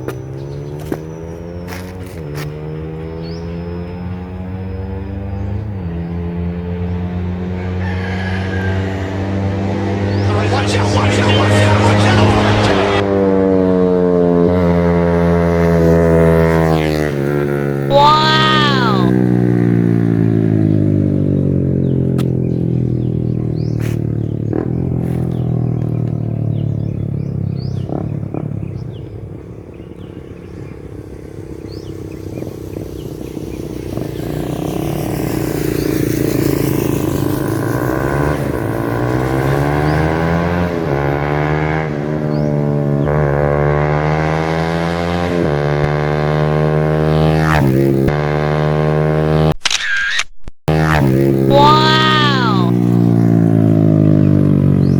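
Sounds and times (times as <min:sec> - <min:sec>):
motorcycle engine passing by: 0:00.0 - 0:49.6, 0:50.7 - 0:54.9.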